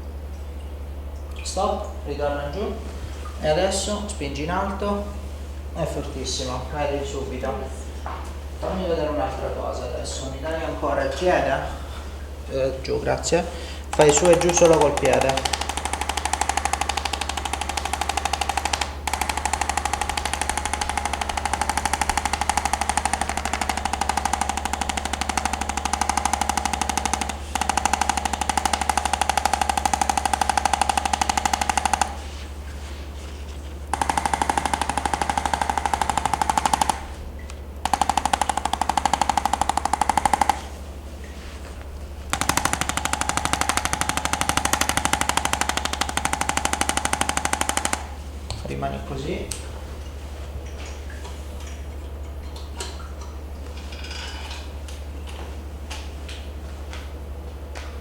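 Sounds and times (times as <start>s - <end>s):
electric percussion device hammering: 13.7s - 33.0s, 33.9s - 40.8s, 42.3s - 48.8s.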